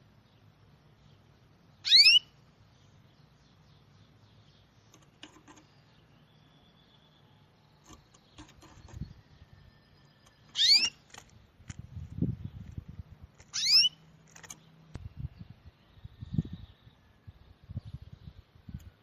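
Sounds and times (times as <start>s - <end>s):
bird rising whistled calls: 1.8s - 2.3s, 10.5s - 11.0s, 13.5s - 14.0s.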